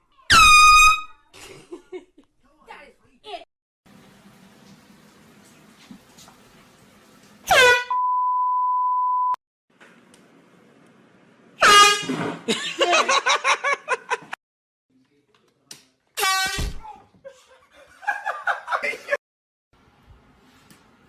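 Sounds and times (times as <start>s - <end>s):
air horn blast: 7.5s - 8.0s, 11.6s - 12.3s.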